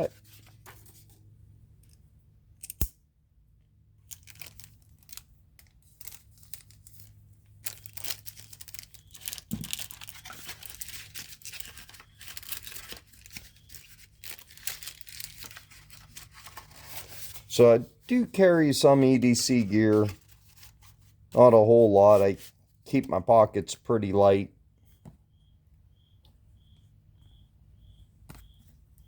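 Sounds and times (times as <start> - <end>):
sharp click: 2.6 - 3.0
packaging rustling and tearing: 4.0 - 18.2.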